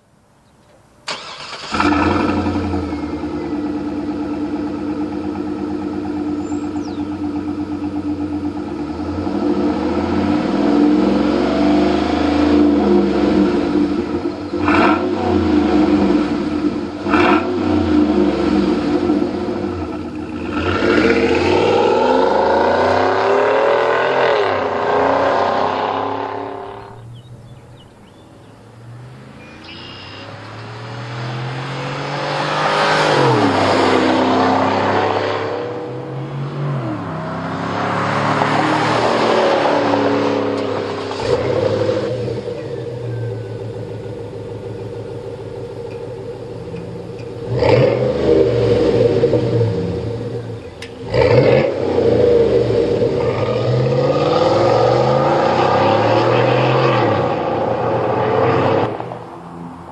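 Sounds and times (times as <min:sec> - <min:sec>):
car engine revving and idling: 0:01.1 - 0:59.9.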